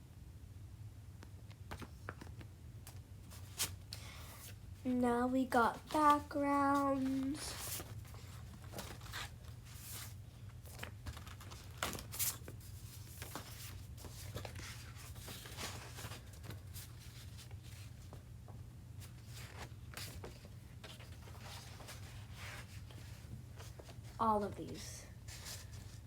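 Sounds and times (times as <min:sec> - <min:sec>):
paper and plastic rustling: 0:05.7 - 0:18.2, 0:19.0 - 0:26.0.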